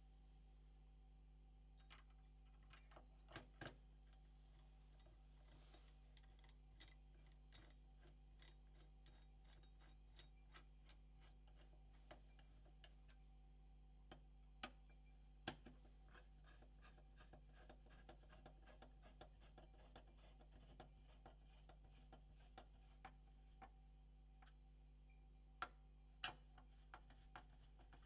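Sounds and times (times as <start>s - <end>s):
low electrical hum: 0.0s - 28.0s
small parts and tools clicking: 1.8s - 11.7s.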